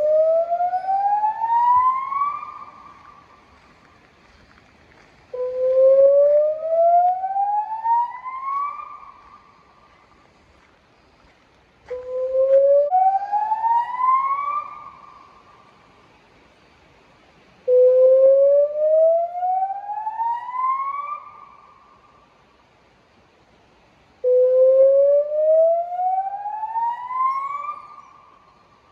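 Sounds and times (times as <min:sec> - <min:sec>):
rising warning siren: 0:00.0 - 0:03.9, 0:05.3 - 0:10.0, 0:11.8 - 0:16.0, 0:17.6 - 0:22.0, 0:24.2 - 0:28.6.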